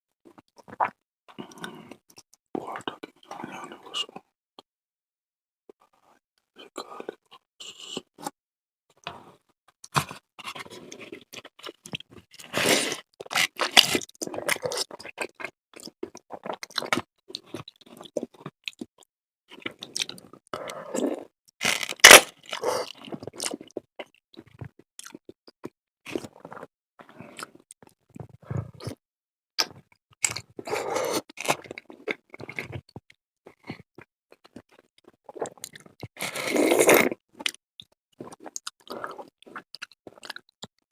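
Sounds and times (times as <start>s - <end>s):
person chewing crunchy food: 9.2s - 18.9s, 19.5s - 25.3s, 30.2s - 40.8s.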